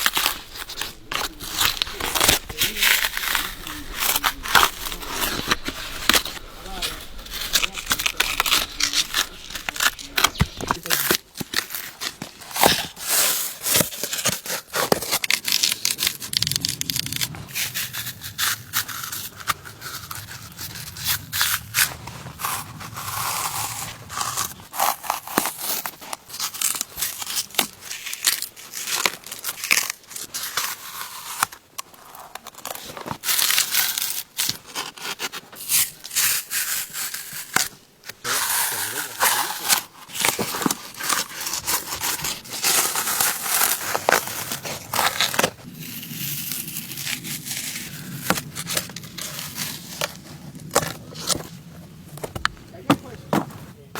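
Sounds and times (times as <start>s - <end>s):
bark tearing off wood: 0.0s - 30.6s, 32.3s - 53.4s.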